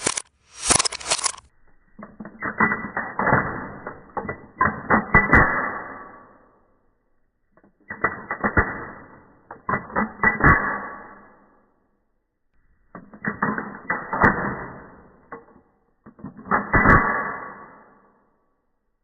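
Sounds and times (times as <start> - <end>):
slowed pistol slide clacks: 0.0 - 6.4, 7.6 - 11.5.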